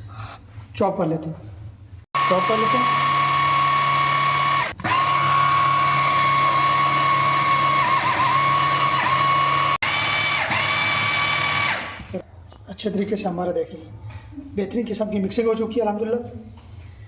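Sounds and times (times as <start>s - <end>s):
food chopper motor whining: 2.2s - 12.2s.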